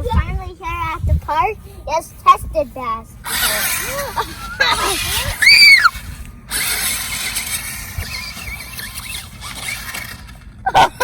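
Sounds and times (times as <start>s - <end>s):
remote-control truck whirring: 3.2s - 11.0s
child squealing: 4.6s - 6.0s.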